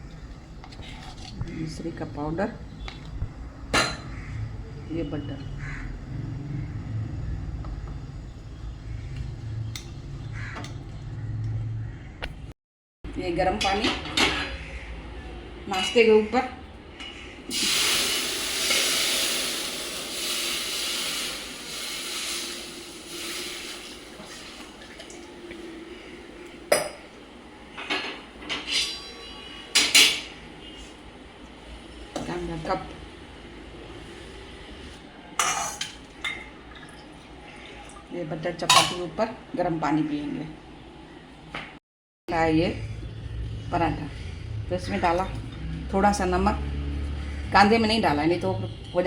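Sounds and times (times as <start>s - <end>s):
dishes and utensils clinking: 27.8s - 30.4s, 35.4s - 36.5s, 38.7s - 39.1s.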